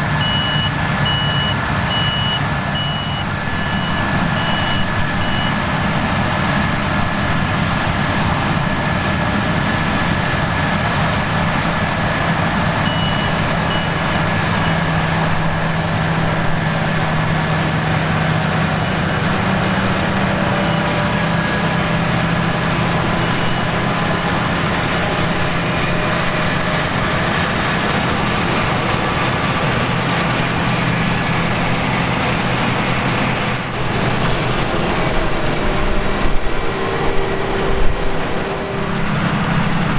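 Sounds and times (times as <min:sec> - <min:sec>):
diesel machinery droning: 0:00.0 - 0:39.9
high warning beeps: 0:00.2 - 0:05.7, 0:12.8 - 0:14.9.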